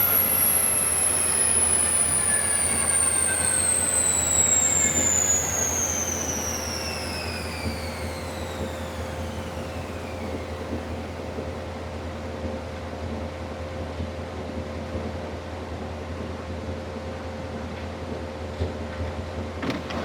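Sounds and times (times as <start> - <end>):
high whine falling in pitch: 0.0 - 12.8
steady low hum: 0.0 - 12.9.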